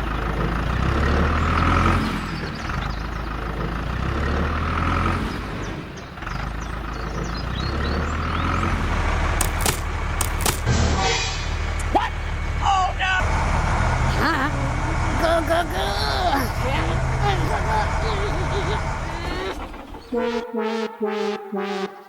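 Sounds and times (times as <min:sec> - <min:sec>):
heavy vehicle engine rumbling: 0:00.0 - 0:21.8
sharp clicks: 0:09.4 - 0:10.7.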